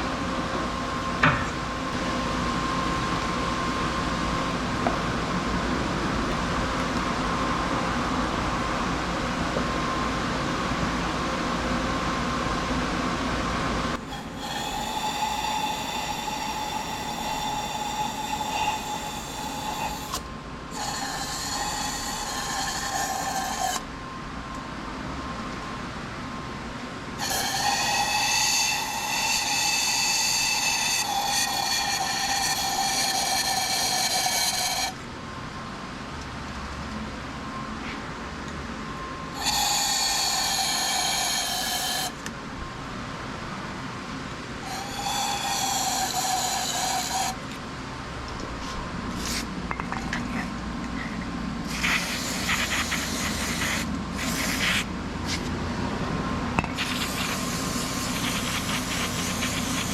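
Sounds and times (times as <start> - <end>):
power tool motor whining: 14.0 - 20.2, 20.8 - 23.8, 27.2 - 35.0.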